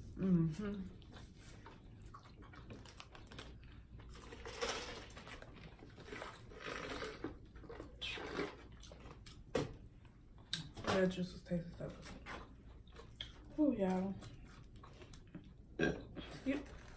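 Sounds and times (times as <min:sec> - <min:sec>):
chewing and lip smacking: 0:00.9 - 0:04.3, 0:12.4 - 0:15.7.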